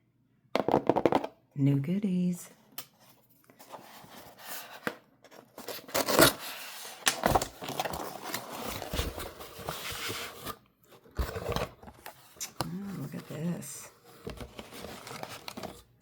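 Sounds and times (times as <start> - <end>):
packaging rustling and tearing: 3.6 - 13.2, 14.0 - 15.9.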